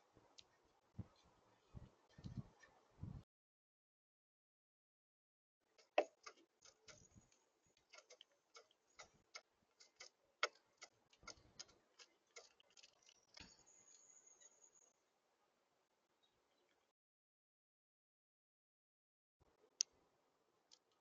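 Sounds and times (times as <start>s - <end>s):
birds pecking seed: 5.7s - 14.6s.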